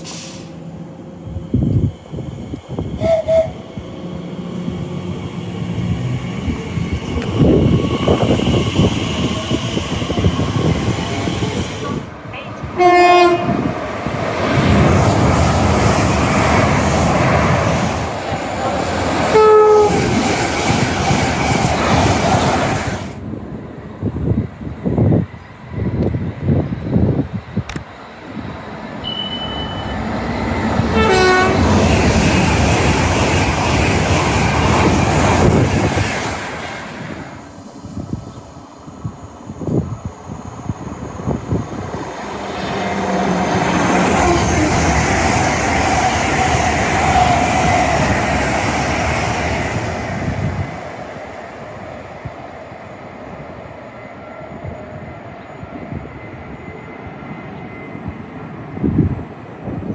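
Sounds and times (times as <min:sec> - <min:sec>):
passing train wheel noise: 0:00.0 - 0:59.9
train running noise: 0:00.0 - 0:59.9
train horn blast: 0:12.4 - 0:13.7, 0:19.3 - 0:20.1, 0:29.0 - 0:30.0, 0:30.9 - 0:31.8.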